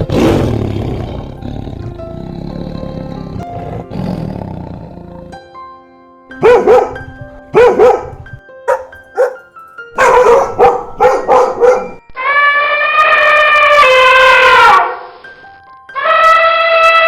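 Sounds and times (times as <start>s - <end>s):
dog barking: 6.4s - 12.0s.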